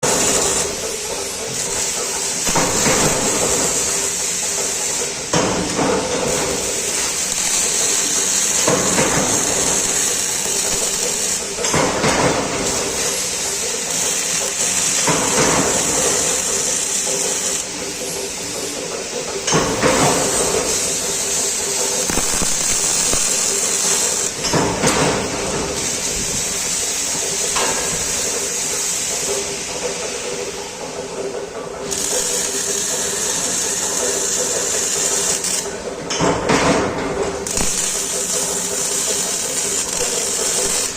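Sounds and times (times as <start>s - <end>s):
welding arc crackling and hissing: 0.0s - 36.3s, 37.0s - 40.9s.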